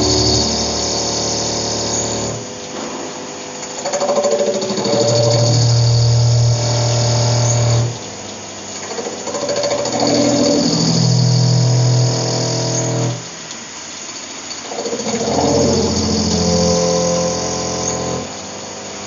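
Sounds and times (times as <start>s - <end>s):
mechanical rattling: 0.0s - 7.9s, 8.7s - 13.2s
lathe buzzing hum: 0.0s - 19.0s.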